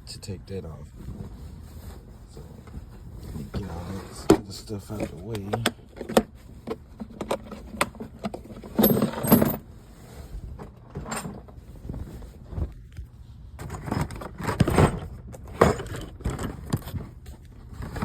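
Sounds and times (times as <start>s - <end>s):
metal tools clinking and rattling: 8.3s - 9.6s.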